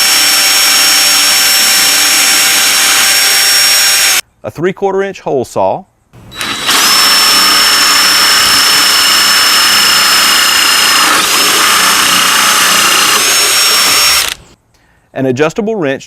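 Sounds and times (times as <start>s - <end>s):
drill with hole saw cutting: 0.0s - 4.2s, 6.3s - 14.6s.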